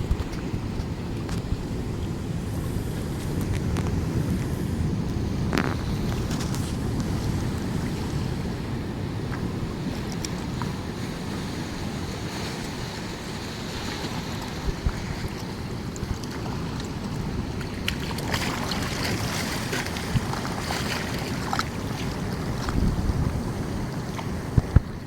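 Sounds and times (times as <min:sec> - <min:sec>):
sea water washing ashore: 0:00.0 - 0:25.0
wind rumbling on microphone: 0:00.0 - 0:25.0.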